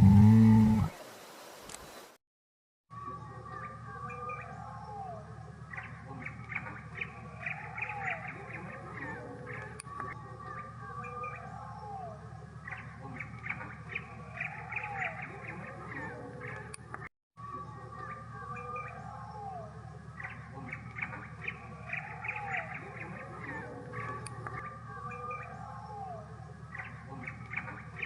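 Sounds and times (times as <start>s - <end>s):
low hum: 0.0s - 0.9s
birds chirping: 0.0s - 2.1s, 20.0s - 28.0s.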